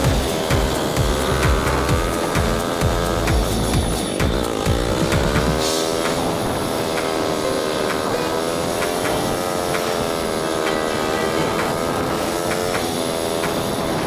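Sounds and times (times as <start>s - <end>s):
heavy low rumble: 0.0s - 5.6s
motorcycle engine revving: 0.0s - 14.0s.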